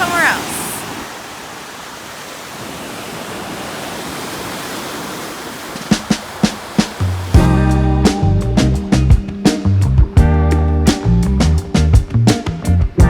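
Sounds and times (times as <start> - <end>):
waves breaking on shore: 0.0 - 7.4.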